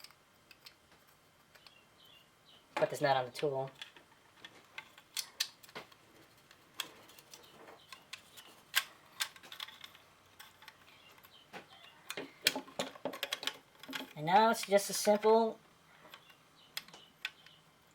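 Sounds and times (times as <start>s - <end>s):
small metal parts clicking: 0.0s - 0.8s, 6.8s - 15.3s.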